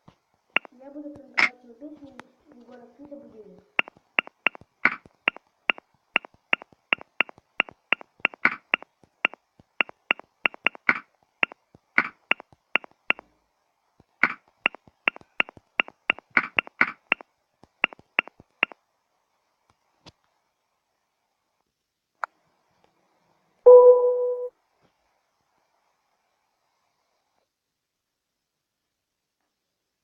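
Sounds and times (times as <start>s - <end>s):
phone keyboard taps clicking: 6.2s - 8.8s, 9.8s - 12.9s, 14.2s - 17.2s, 17.8s - 18.3s.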